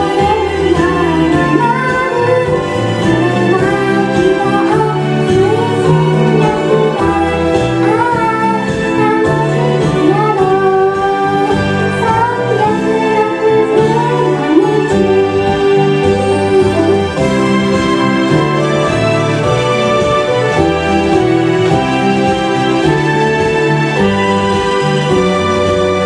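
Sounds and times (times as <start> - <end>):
woman singing a pop ballad: 0.0 - 17.8
backing track with bass line: 0.0 - 26.0.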